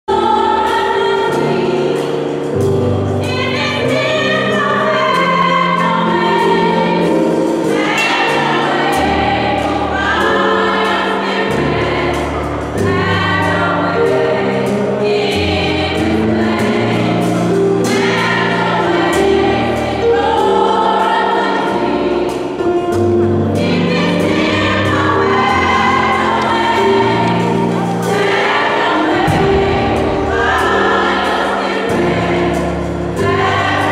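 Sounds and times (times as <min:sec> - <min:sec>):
instrumental accompaniment: 0:00.1 - 0:33.9
youth choir singing: 0:00.1 - 0:33.9
held bass notes: 0:23.1 - 0:33.9.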